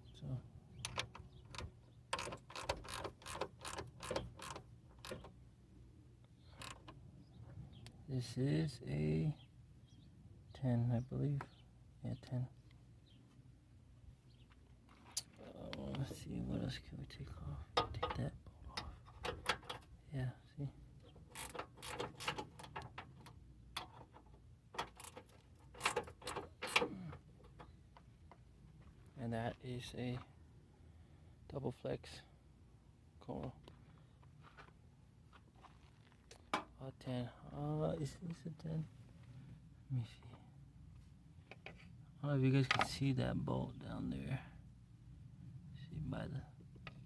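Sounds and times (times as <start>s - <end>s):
ratcheting wrench clicking: 0.9s - 5.3s, 21.3s - 22.8s.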